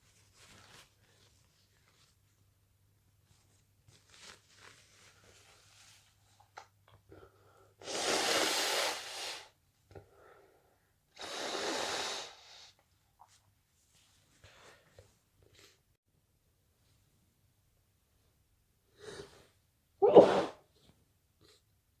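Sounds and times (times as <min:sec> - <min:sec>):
person sneezing: 0:20.0 - 0:20.6.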